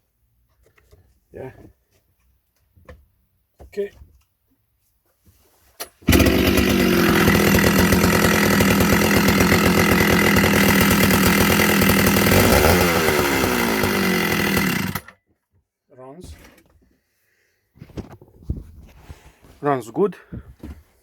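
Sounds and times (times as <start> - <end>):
chainsaw engine at high revs: 6.1 - 15.1.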